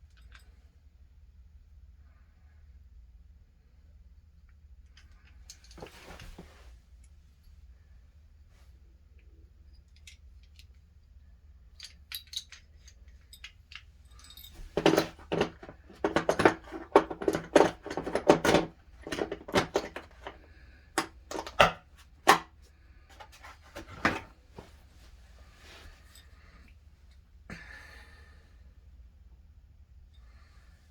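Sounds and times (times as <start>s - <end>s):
metal tools clinking and clattering: 11.8s - 22.4s.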